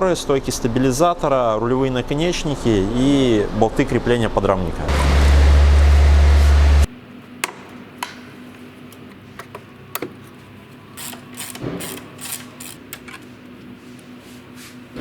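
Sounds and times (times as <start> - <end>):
ratchet rasping: 11.0 - 13.1.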